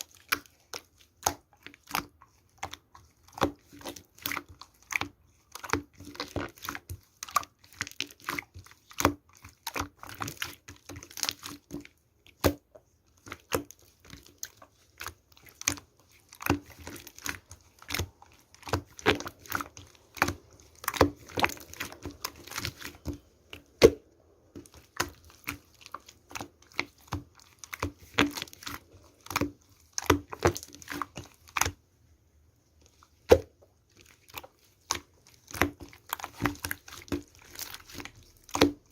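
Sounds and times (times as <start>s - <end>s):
sharp crackles and crinkles: 32.8s - 38.9s.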